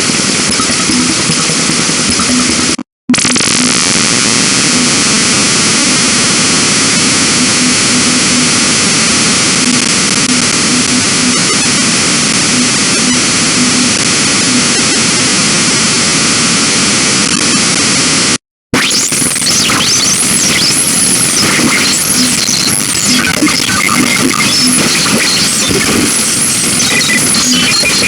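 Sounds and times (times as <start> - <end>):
harsh computer noise hiss: 3.5 - 14.8, 18.8 - 28.0
pulsing buzzing tone: 7.0 - 9.0, 18.8 - 28.0.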